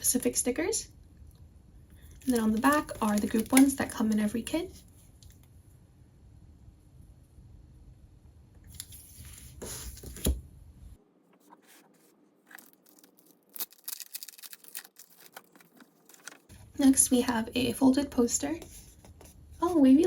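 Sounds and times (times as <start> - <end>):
crisp crackles: 2.0 - 4.6, 12.5 - 16.6
paper and plastic rustling: 2.0 - 4.8, 8.7 - 10.4, 11.4 - 16.8.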